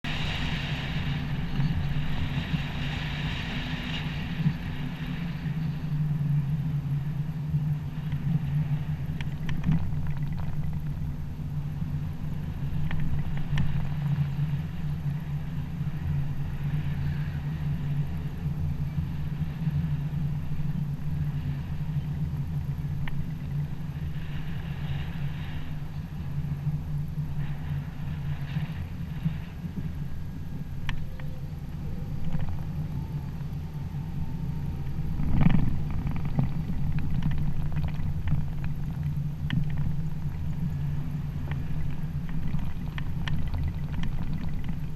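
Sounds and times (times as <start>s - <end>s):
car engine and road noise: 30.5s - 44.9s.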